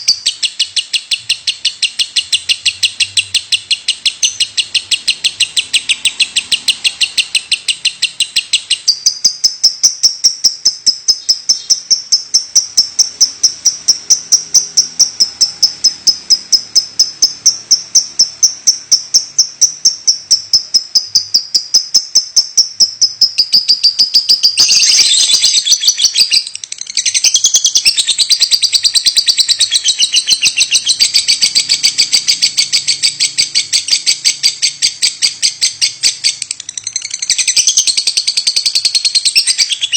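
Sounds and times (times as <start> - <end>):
lovebird chirping: 0.0 - 39.9.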